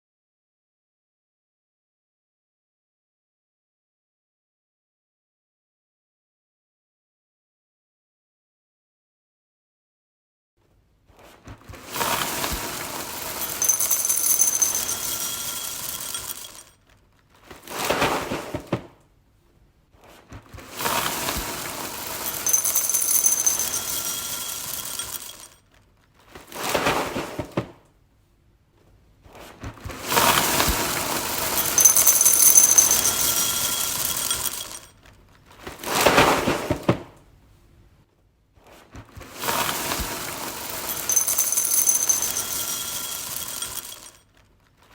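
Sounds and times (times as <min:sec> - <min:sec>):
cereal pouring into a bowl: 0:12.0 - 0:16.7, 0:20.8 - 0:25.6, 0:30.2 - 0:34.9, 0:39.4 - 0:44.2.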